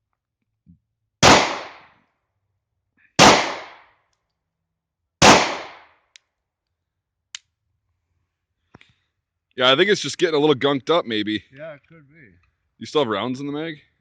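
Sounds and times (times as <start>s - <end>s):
pistol shots: 1.2s - 1.9s, 3.2s - 3.9s, 5.2s - 5.9s.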